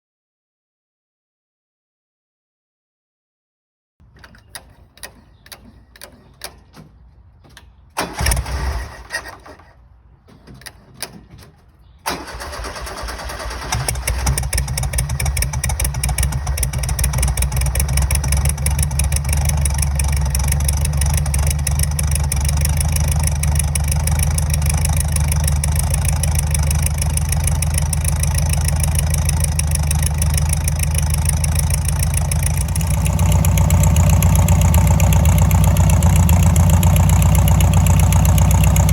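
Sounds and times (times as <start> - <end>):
engine cranking: 4.0 - 38.9
engine idling: 12.1 - 38.9.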